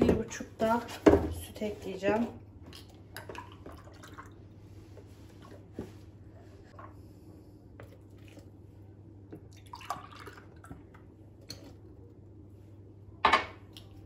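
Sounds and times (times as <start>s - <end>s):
milk trickling into bowl: 7.8s - 12.0s.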